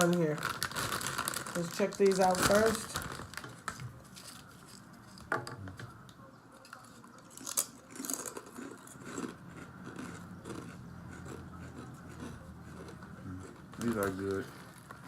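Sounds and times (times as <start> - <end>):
potato chip crunch: 0.0 - 4.8, 6.6 - 15.0
person chewing chips: 0.1 - 5.2, 6.6 - 15.0.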